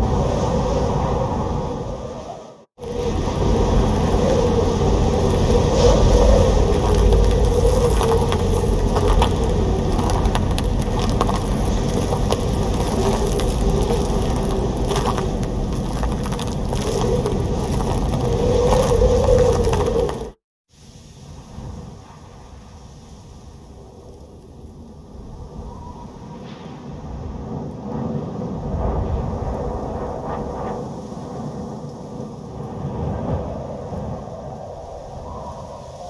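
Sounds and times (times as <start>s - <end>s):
storm wind howling: 0.0s - 36.0s.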